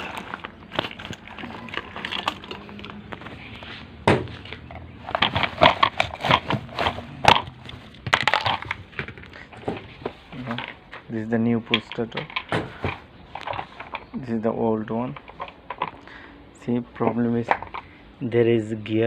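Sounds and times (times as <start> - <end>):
plastic crackling and knocking: 0.0 - 3.4, 4.1 - 11.1, 11.7 - 14.2.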